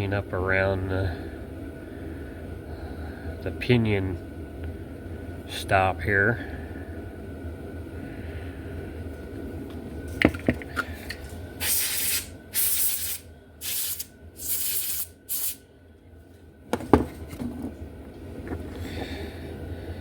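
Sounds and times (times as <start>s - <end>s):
aerosol spray hissing: 11.6s - 15.6s.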